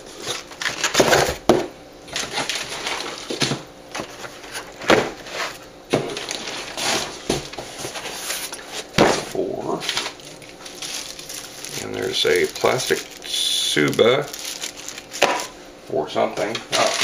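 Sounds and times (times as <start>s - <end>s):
cardboard rustling and crinkling: 2.1s - 15.5s.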